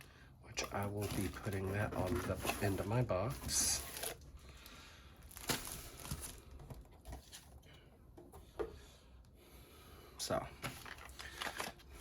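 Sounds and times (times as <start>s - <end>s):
packaging rustling: 0.6s - 4.4s, 5.2s - 7.6s, 10.6s - 12.0s.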